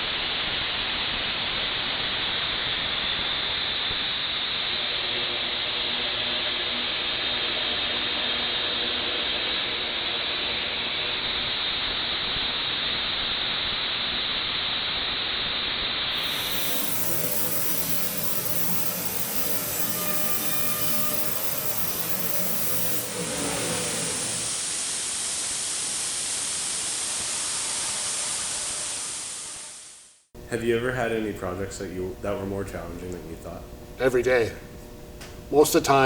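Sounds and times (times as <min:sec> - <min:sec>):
cnc router cutting wood: 0:16.1 - 0:29.7.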